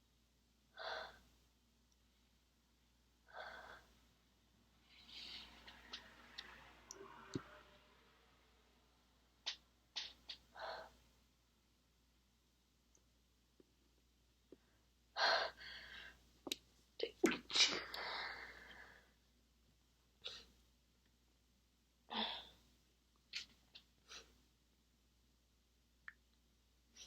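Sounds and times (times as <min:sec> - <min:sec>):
woman's stifled sneezes: 0:17.2 - 0:18.3.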